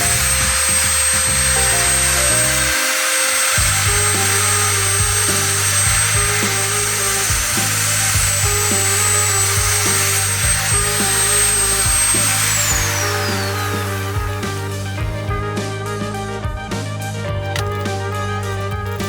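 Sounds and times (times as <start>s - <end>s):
electric drill whining: 0.0s - 15.5s, 17.4s - 19.0s
background music with beat: 0.0s - 19.0s.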